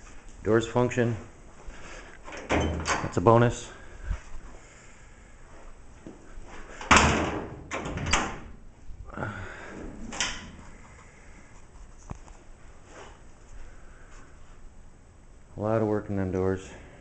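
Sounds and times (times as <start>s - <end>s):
door and latch clunks: 2.3s - 3.2s.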